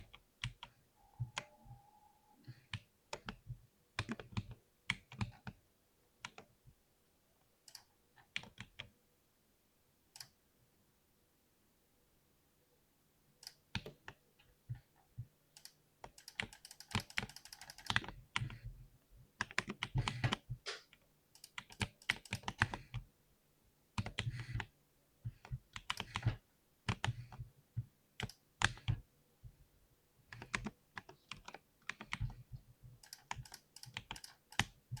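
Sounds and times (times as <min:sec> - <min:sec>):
typing on mechanical keyboard: 0:02.5 - 0:05.6, 0:15.6 - 0:18.7, 0:19.4 - 0:20.8, 0:21.4 - 0:23.0, 0:24.0 - 0:24.7, 0:25.3 - 0:27.4, 0:28.2 - 0:29.0, 0:30.3 - 0:35.0.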